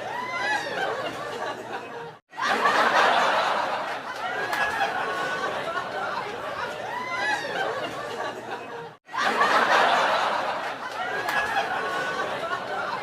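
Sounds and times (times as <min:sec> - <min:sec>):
people laughing together: 0:00.0 - 0:13.0.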